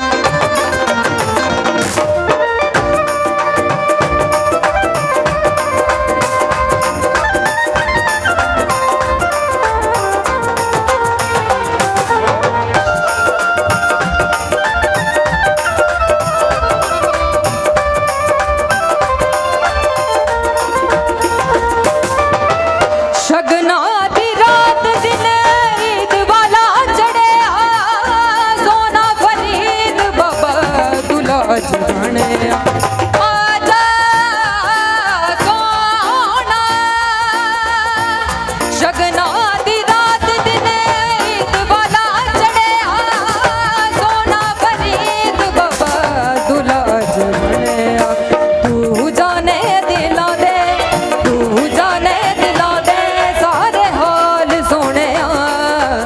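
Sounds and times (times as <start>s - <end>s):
instrumental accompaniment: 0.0s - 56.0s
steady drum beat: 0.0s - 56.0s
girl singing folk song: 23.2s - 56.0s.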